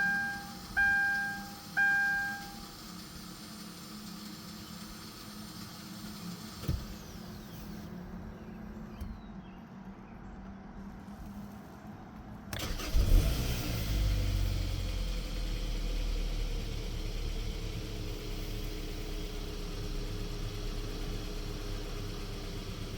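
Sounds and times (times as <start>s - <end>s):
car engine cranking and idling: 0.0s - 10.1s, 12.5s - 22.9s.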